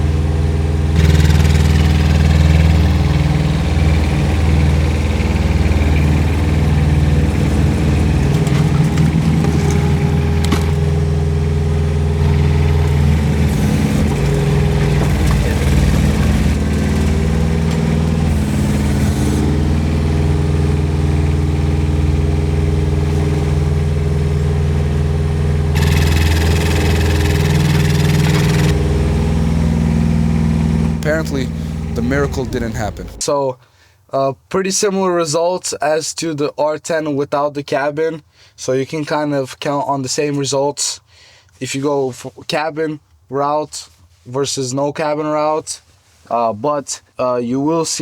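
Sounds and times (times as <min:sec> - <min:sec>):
diesel engine running: 0:00.0 - 0:33.2.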